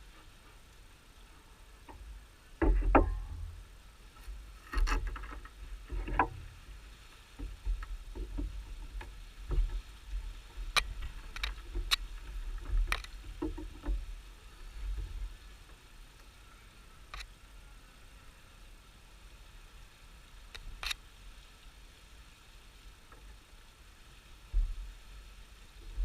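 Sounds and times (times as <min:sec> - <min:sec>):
wooden knocks of beehive boxes: 0:02.6 - 0:03.5.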